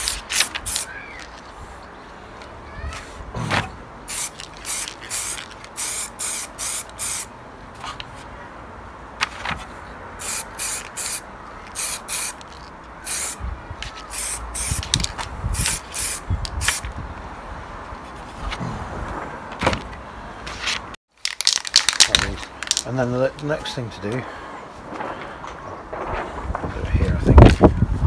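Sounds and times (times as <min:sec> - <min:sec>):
spray paint can hissing: 0:00.0 - 0:01.4, 0:04.1 - 0:07.3, 0:10.2 - 0:13.4, 0:14.1 - 0:16.9.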